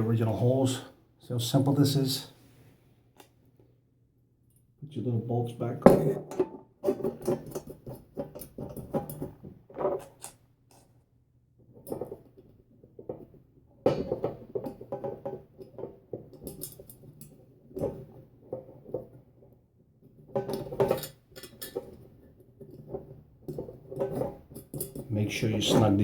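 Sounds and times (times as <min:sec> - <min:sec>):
small metal clicks and clatter: 0:06.3 - 0:10.9, 0:11.7 - 0:19.5, 0:20.1 - 0:25.8.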